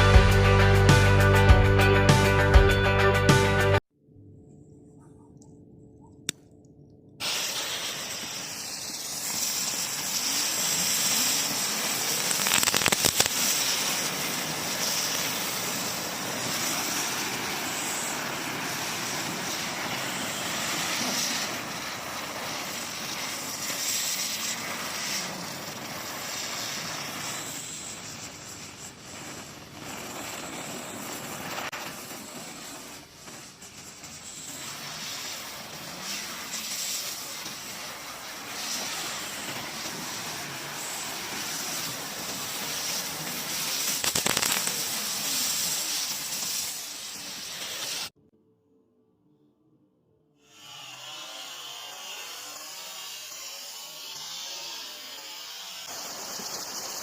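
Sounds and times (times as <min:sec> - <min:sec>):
click: 0:05.0 - 0:07.0
firework spraying sparks hiss: 0:07.2 - 0:48.2, 0:51.9 - 0:57.0.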